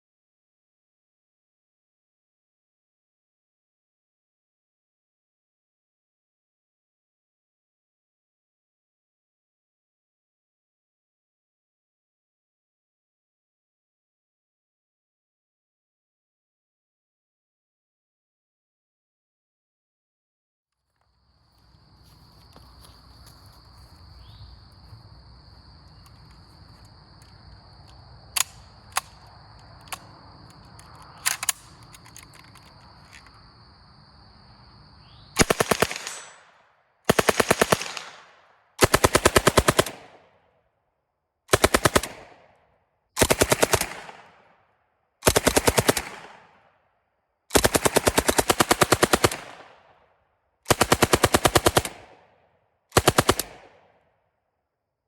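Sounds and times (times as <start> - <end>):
sharp clicks: 25.8 - 33.4, 35.4 - 36.5
submachine gun automatic bursts: 35.4 - 40.2, 41.5 - 42.4, 43.2 - 44.4, 45.2 - 46.6, 47.5 - 49.8, 50.7 - 52.2, 52.9 - 53.8.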